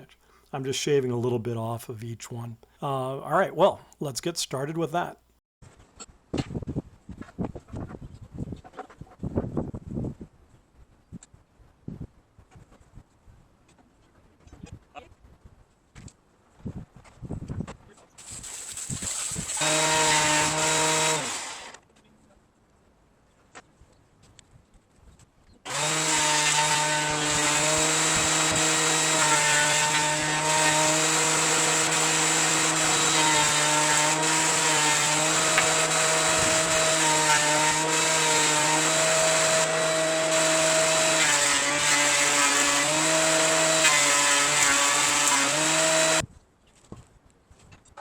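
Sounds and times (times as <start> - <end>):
electric wood planer whining: 19.1 - 21.8, 25.7 - 46.2.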